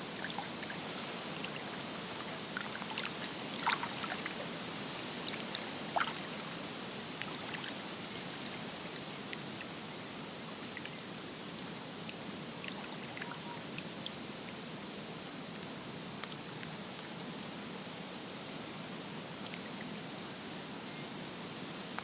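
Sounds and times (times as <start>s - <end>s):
water rushing at lake edge: 0.0s - 14.1s.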